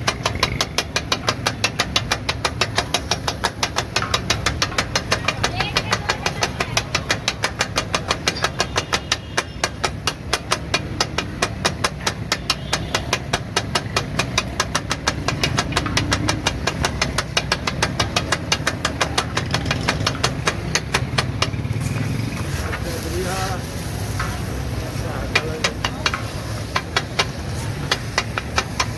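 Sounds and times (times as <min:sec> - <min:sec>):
metal spatulas chopping on griddle: 0:00.0 - 0:28.9
food sizzling: 0:20.0 - 0:28.9.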